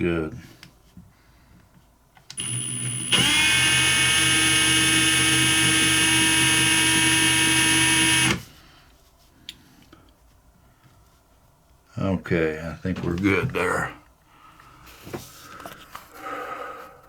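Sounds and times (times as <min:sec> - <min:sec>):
electric drill whining: 0:02.4 - 0:08.5.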